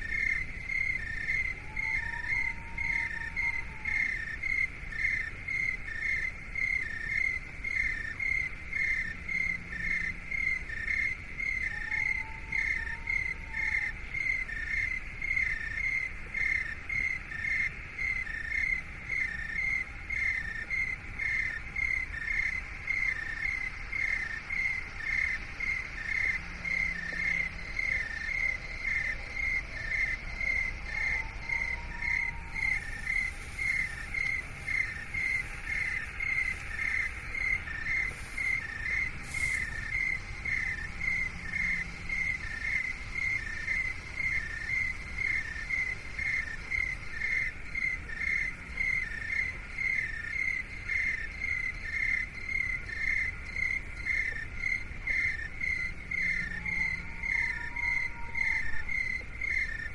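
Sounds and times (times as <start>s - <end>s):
crickets chirping: 0.0s - 59.9s
faint whistle-like tone: 1.0s - 4.5s, 56.2s - 59.2s.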